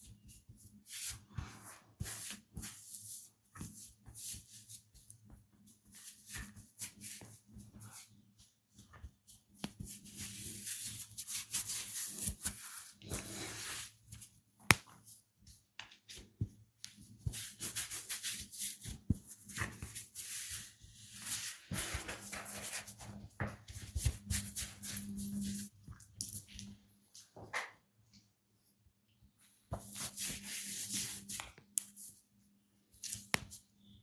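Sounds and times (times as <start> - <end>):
hands rubbing skin and hair: 29.7 - 32.2.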